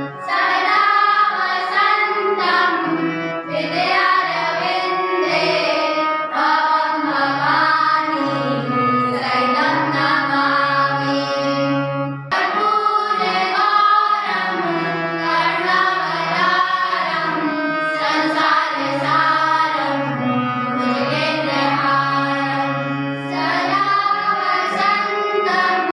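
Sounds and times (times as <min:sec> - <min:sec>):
voices singing: 0:00.0 - 0:11.7, 0:12.3 - 0:26.0
low accompaniment: 0:00.0 - 0:25.9.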